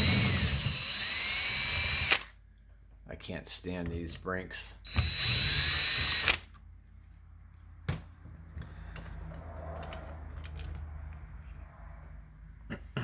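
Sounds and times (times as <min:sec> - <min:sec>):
power drill running: 0:00.0 - 0:02.3, 0:04.9 - 0:06.5.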